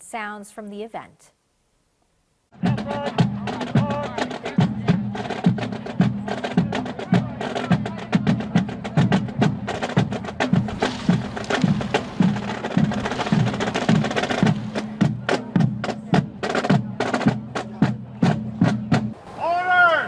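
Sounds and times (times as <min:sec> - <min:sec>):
bass drum beat: 0:02.5 - 0:19.1
snare drum strokes: 0:09.0 - 0:17.4.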